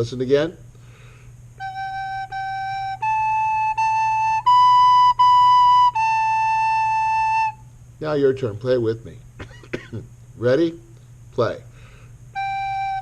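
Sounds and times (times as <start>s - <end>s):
recorder playing tongued notes: 1.6s - 7.6s, 12.4s - 13.0s.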